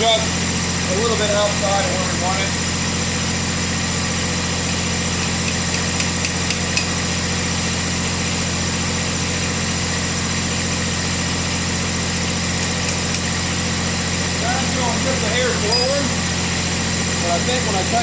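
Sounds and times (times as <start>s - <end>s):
tractor engine idling: 10.6s - 18.0s.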